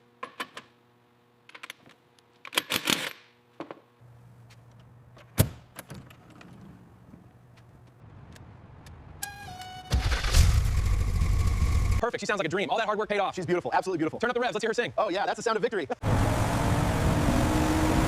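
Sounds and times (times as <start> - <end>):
low steady hum: 3.3 - 9.4.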